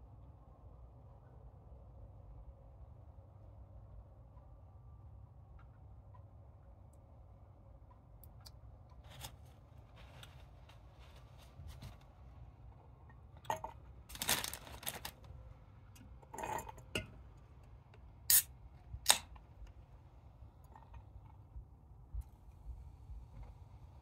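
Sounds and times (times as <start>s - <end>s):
food packaging crackling: 13.5s - 15.4s.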